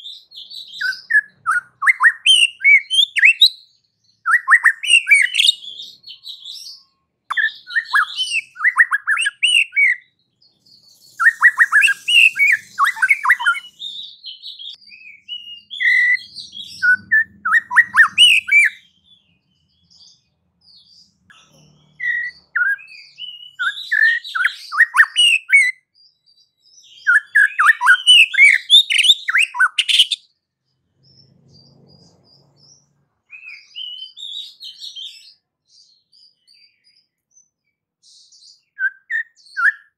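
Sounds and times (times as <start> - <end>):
bird singing whistled phrases: 0.0 - 10.1, 11.0 - 20.0, 21.9 - 30.3, 33.3 - 37.5, 38.1 - 39.9.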